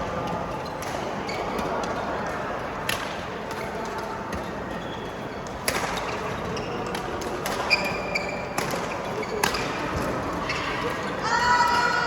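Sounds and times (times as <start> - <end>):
murmur of voices: 0.0 - 12.0
shoes squeaking on court: 4.4 - 10.9
rackets hitting shuttlecock: 6.9 - 11.0.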